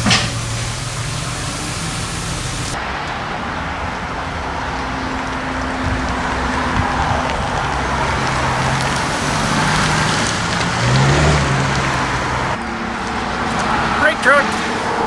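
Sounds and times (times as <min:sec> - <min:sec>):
steady hiss: 0:00.0 - 0:02.8
car engine running: 0:00.0 - 0:15.0.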